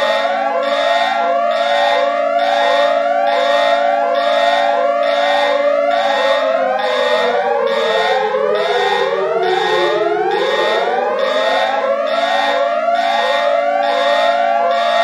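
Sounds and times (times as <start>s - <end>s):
rising siren sweeps: 0.0s - 15.0s
steady low alarm tones: 0.0s - 15.0s
pulsed high beep: 6.8s - 13.0s.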